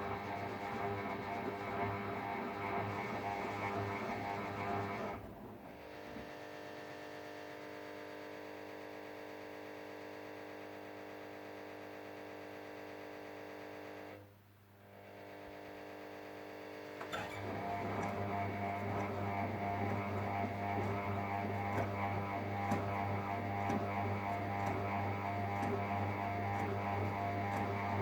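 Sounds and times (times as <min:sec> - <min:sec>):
washing machine motor hum: 0:00.0 - 0:06.3, 0:17.0 - 0:28.0.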